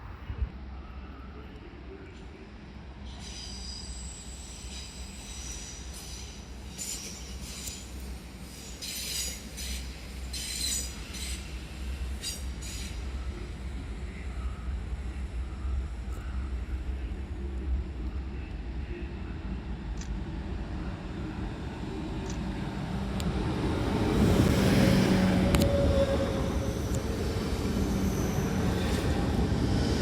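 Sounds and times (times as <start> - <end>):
low train rumble: 0.0 - 30.0
train wheels squealing: 3.0 - 13.6, 24.6 - 29.9.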